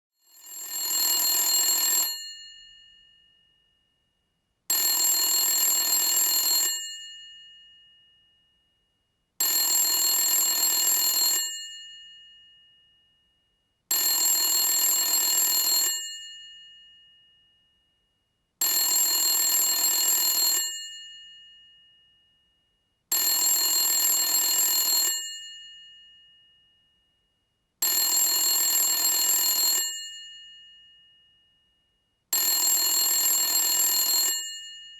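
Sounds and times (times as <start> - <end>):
old telephone bell ringing: 0.3 - 3.2, 4.7 - 8.0, 9.4 - 12.7, 13.9 - 17.2, 18.6 - 21.8, 23.1 - 26.4, 27.8 - 31.2, 32.4 - 34.9.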